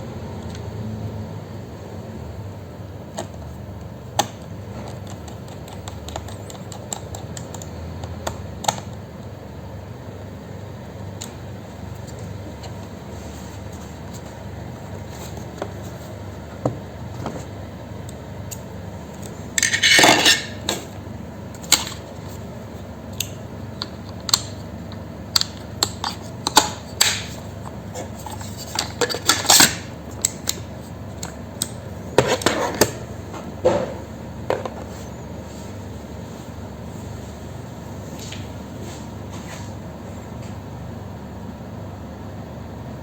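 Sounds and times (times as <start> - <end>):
steady low hum: 0.0 - 43.0
clicks and scrapes of laptop parts: 4.2 - 9.0, 25.4 - 30.6.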